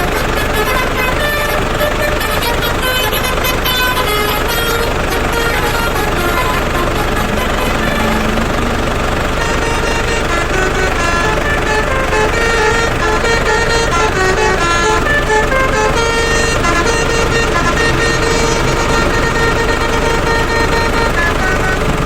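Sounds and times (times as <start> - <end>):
truck horn playing a tune: 0.0 - 22.0
steady low rumble: 4.8 - 10.8.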